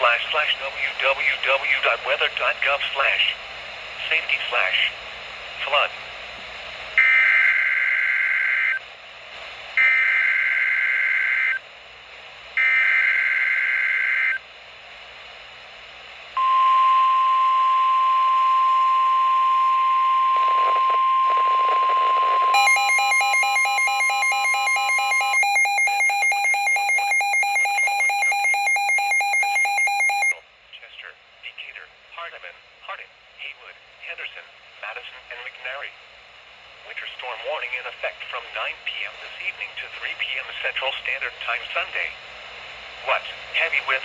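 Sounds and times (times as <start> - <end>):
pulsing electronic alarm beeping: 9.8 - 11.6, 12.6 - 14.4, 16.4 - 30.4
steady warning alarm tone: 9.8 - 11.6, 12.6 - 14.4, 16.4 - 30.4.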